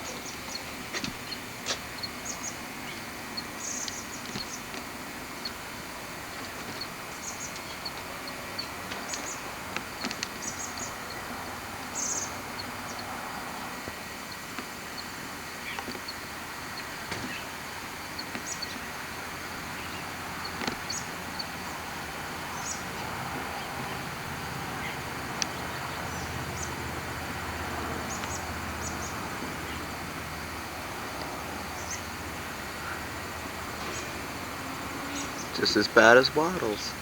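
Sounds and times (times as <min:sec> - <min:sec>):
outdoor background hiss: 0:00.0 - 0:37.0
high chirps and clicks: 0:13.7 - 0:23.1.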